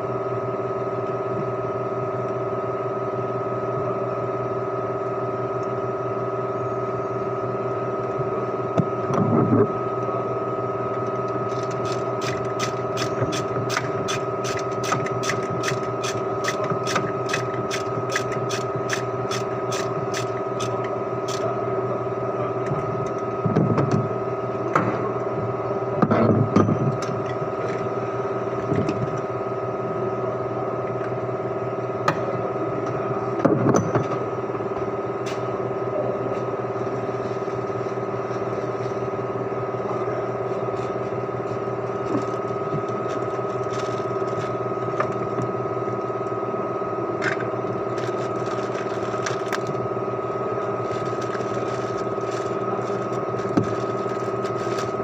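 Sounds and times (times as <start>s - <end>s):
steady machine hum: 0.0s - 55.0s.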